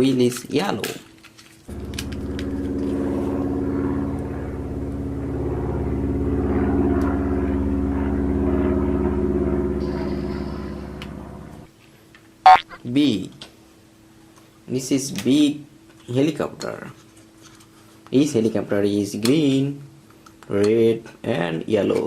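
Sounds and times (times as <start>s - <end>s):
engine drone: 1.7s - 11.7s.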